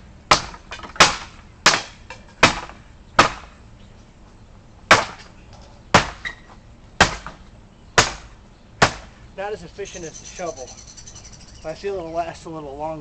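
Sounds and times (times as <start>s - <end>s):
axe chopping into wood: 0.3s - 3.6s, 4.9s - 5.3s, 5.9s - 6.4s, 7.0s - 7.4s, 8.0s - 9.1s.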